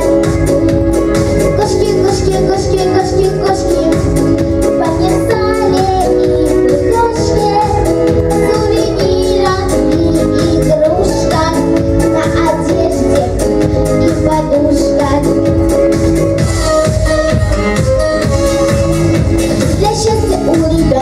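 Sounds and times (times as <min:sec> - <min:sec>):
pop backing track with drum beat: 0:00.0 - 0:21.0
girl singing: 0:01.5 - 0:15.7, 0:19.6 - 0:21.0.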